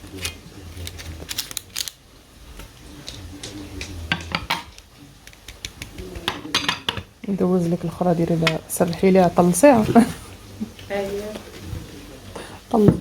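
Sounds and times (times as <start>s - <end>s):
utensils knocking against dishes: 3.1s - 4.8s, 5.5s - 7.1s.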